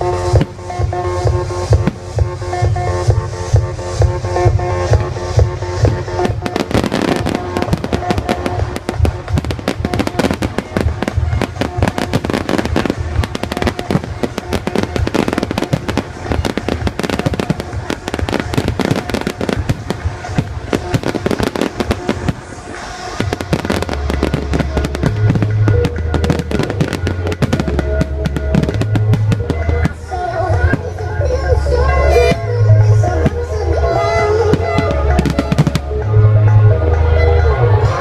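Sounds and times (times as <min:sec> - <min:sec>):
fireworks banging and crackling: 0:00.0 - 0:32.4, 0:33.1 - 0:36.0
loud music with heavy bass: 0:00.0 - 0:38.0.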